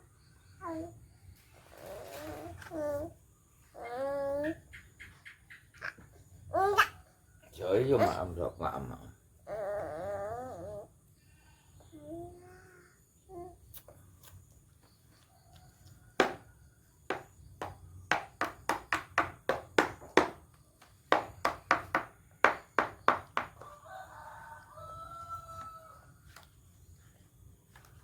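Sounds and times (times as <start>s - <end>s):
sharp knocks: 16.2s - 16.4s, 17.1s - 20.4s, 21.1s - 23.6s
rooster crowing: 23.6s - 26.4s.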